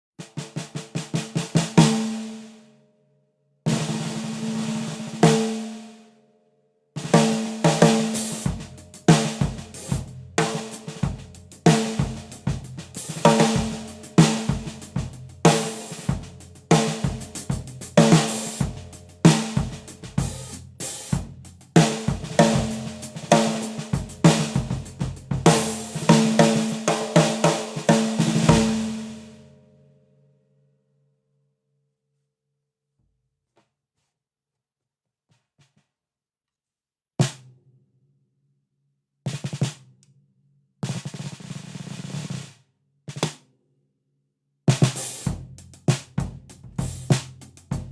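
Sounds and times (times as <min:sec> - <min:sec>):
drum kit playing: 0:00.3 - 0:02.4, 0:03.7 - 0:05.7, 0:07.0 - 0:29.4, 0:44.7 - 0:47.9.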